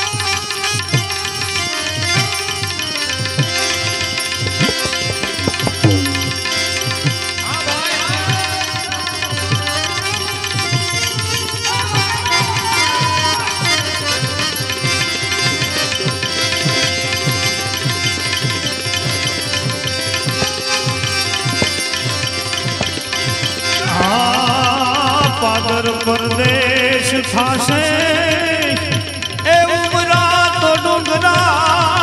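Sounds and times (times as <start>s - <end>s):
hand drums: 2.1s - 27.9s
melodic instrument: 3.5s - 7.9s.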